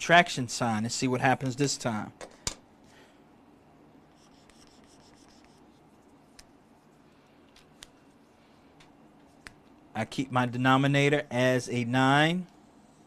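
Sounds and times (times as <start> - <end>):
faint scratching of writing on board: 4.1 - 7.0.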